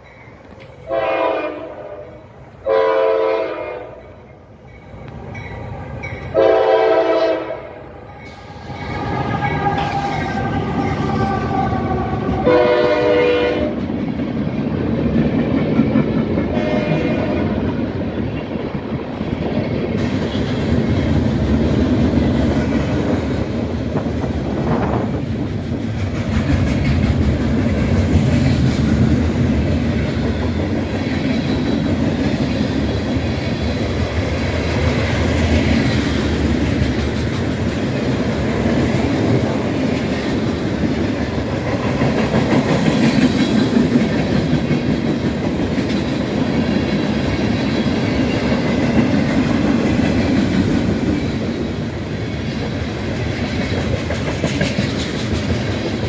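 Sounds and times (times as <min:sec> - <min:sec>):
locomotive air horn blasts: 0:00.9 - 0:04.1, 0:06.4 - 0:07.9, 0:11.9 - 0:13.8, 0:16.5 - 0:17.5
train wheels rumbling on rails: 0:03.3 - 0:56.0.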